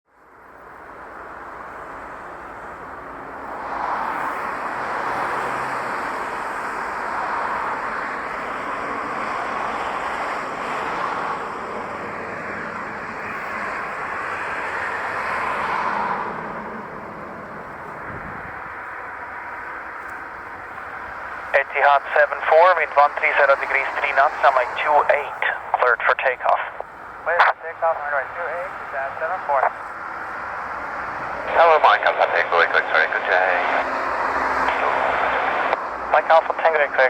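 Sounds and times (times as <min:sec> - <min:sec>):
jet engine rushing: 0:09.4 - 0:37.0.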